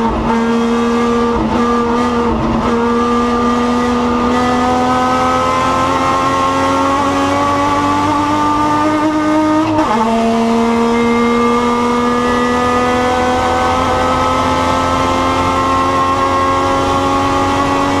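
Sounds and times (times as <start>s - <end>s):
race car engine revving: 0.0s - 18.0s.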